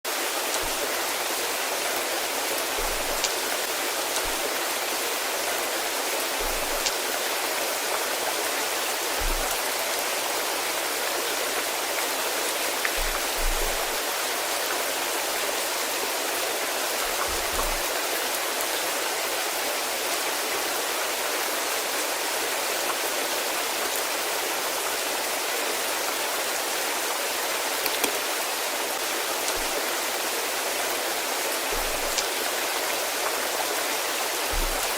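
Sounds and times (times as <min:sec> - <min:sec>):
steady rainfall: 0:00.0 - 0:34.9
soft low thuds: 0:09.2 - 0:09.6, 0:13.0 - 0:14.0, 0:34.5 - 0:34.9.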